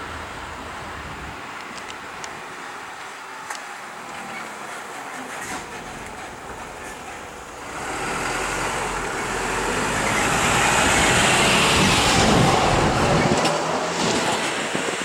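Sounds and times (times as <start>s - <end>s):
vehicle approaching: 5.1s - 15.0s.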